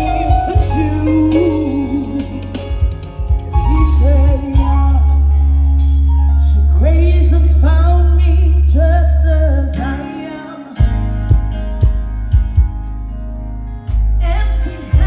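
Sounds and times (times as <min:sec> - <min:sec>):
held deep bass note: 0:00.0 - 0:09.8
person singing melismatic lines: 0:00.0 - 0:10.9.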